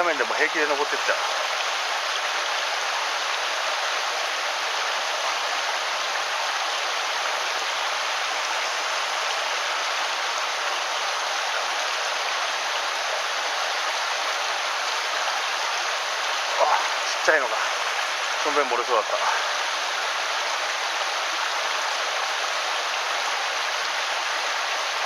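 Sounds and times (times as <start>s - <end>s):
mountain stream rushing: 0.0s - 25.0s.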